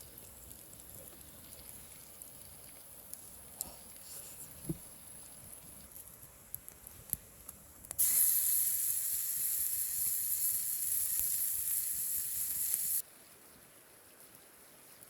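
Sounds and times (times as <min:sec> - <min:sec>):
steady high hiss: 0:07.8 - 0:13.1.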